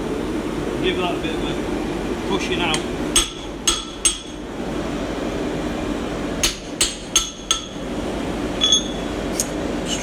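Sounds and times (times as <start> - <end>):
hammer striking steel on anvil: 2.7 - 4.4, 6.4 - 7.8, 8.6 - 9.0.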